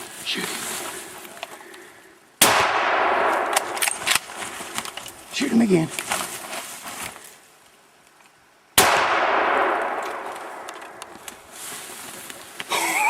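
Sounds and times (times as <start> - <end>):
rifle shot with echo: 2.4 - 4.0, 8.8 - 11.0.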